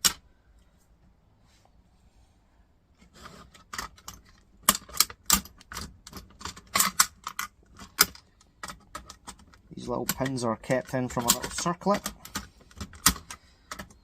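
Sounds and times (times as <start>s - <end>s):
metal parts and tools clinking: 3.4s - 14.0s.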